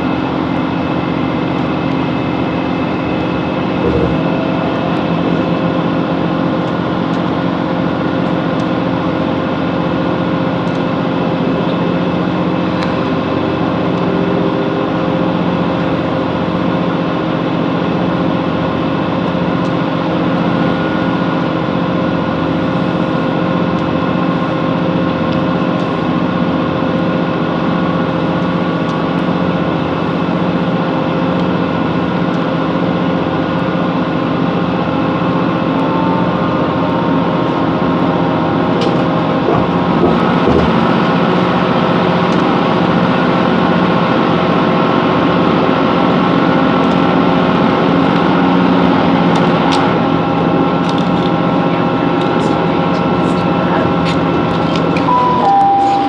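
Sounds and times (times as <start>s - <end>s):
continuous rushing noise: 0.0s - 56.0s
train diesel engine running: 0.0s - 56.0s
held tones: 55.1s - 56.0s.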